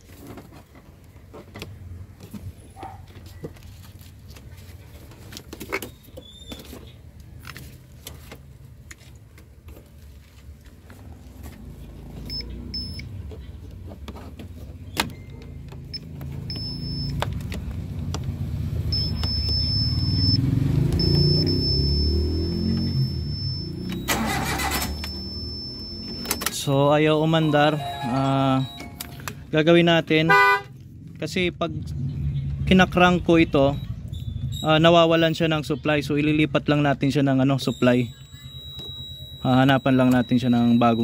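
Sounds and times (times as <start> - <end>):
thin high tone: 21.1 - 29.3
engine cranking on starter: 23.8 - 26.6.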